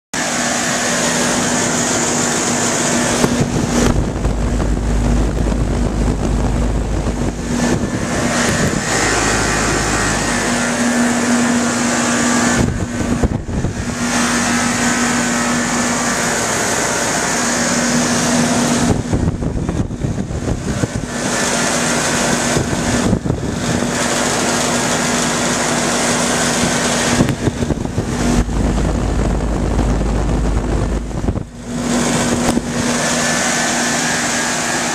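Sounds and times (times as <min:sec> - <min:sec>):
fan rushing: 0:00.2 - 0:34.9
heat pump humming: 0:00.2 - 0:34.9
low rumble: 0:02.3 - 0:21.2, 0:26.7 - 0:33.5.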